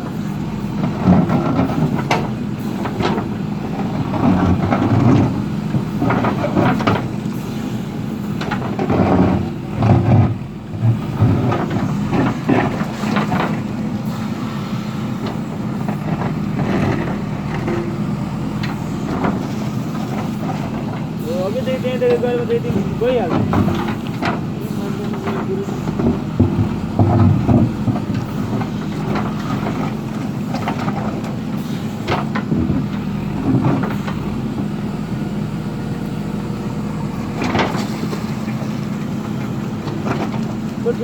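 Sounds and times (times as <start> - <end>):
diesel engine running under load: 0.0 - 41.0
sharp knocks and clanks: 18.6 - 31.4.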